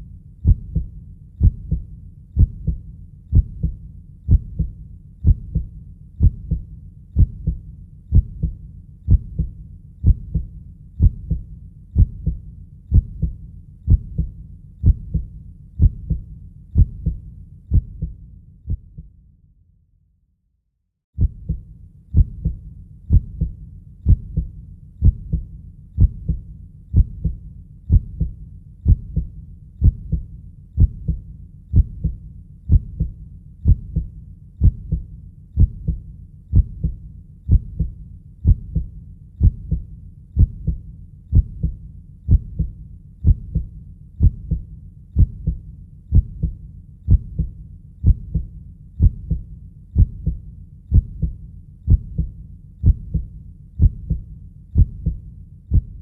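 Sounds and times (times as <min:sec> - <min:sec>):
heartbeat thumps: 0:00.0 - 0:19.1, 0:21.2 - 0:56.0
low steady rumble: 0:21.2 - 0:56.0.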